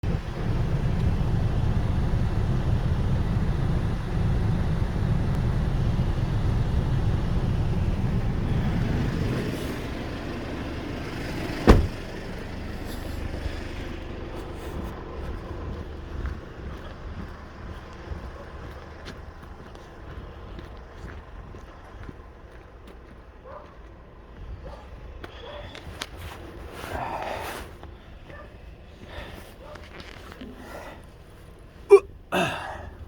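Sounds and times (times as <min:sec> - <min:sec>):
diesel engine rumbling: 0:00.0 - 0:33.0
sharp knock: 0:11.7 - 0:11.9.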